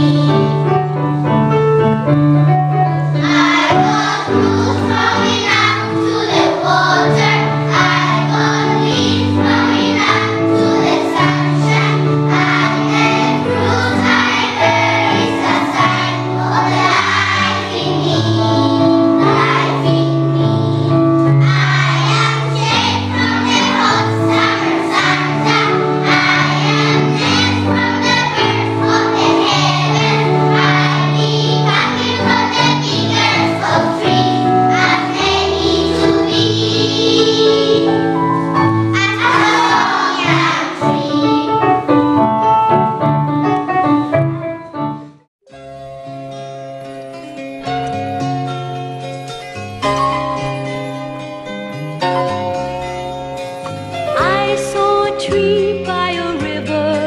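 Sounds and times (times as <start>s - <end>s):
children singing together: 0.0s - 0.9s, 3.1s - 42.0s.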